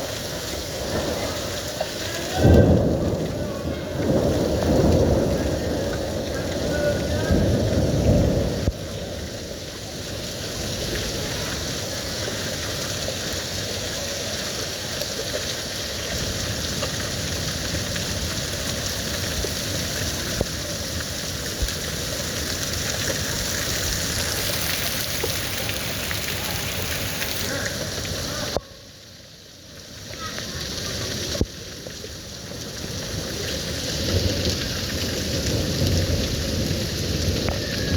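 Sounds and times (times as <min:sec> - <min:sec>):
heavy rain falling: 0:00.0 - 0:37.9
sharp ticks of raindrops: 0:00.0 - 0:37.9.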